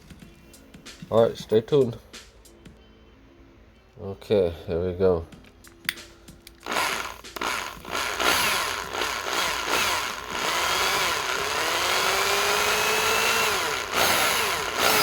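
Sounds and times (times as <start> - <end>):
power drill grinding metal: 6.6 - 15.0.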